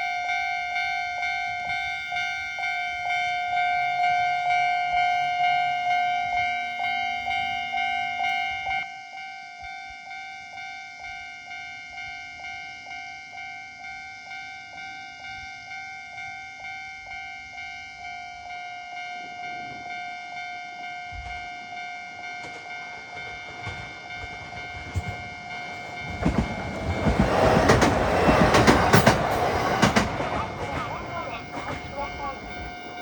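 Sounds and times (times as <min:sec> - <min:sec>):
level crossing bell ringing: 0:12.0 - 0:33.0
train wheels clacking on rail joints: 0:22.2 - 0:33.0.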